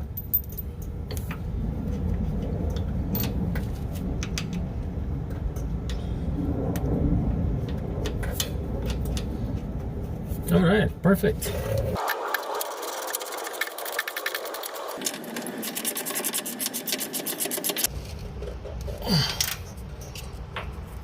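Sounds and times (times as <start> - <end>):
low engine-like rumble: 0.0 - 12.0.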